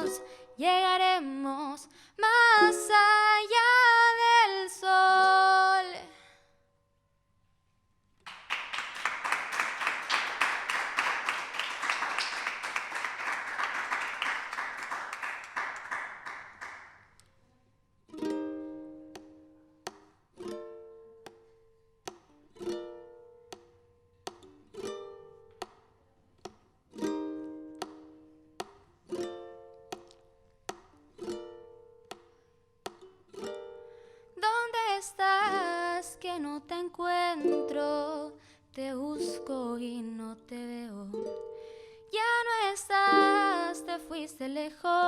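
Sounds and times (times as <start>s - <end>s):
audience applauding: 8.3s - 17.0s.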